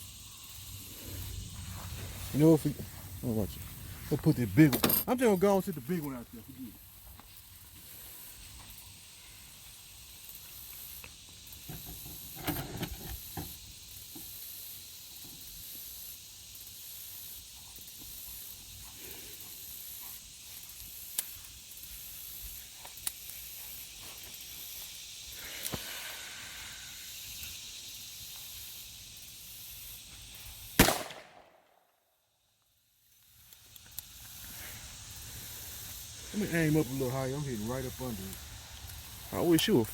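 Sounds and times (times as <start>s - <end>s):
steady outdoor hiss: 0.0s - 39.9s
loud handgun shot: 30.8s - 31.6s.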